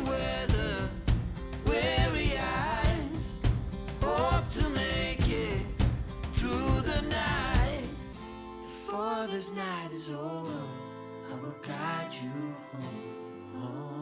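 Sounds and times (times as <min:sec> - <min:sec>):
pop song with vocalist: 0:00.0 - 0:14.0.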